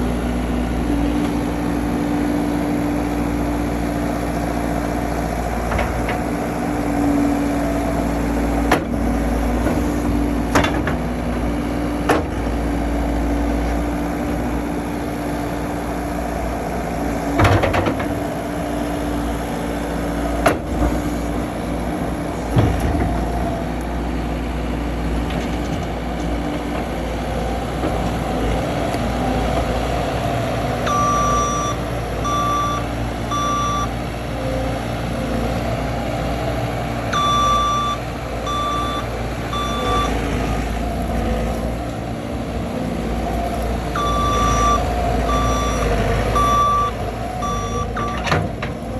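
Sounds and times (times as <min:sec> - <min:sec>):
diesel engine running: 0:00.0 - 0:48.9
machine knocks and clunks: 0:05.6 - 0:06.5, 0:08.4 - 0:12.8, 0:17.3 - 0:18.3, 0:20.3 - 0:24.2, 0:47.8 - 0:48.9
backup alarm beeping: 0:30.9 - 0:34.0, 0:37.2 - 0:40.2, 0:44.0 - 0:48.2.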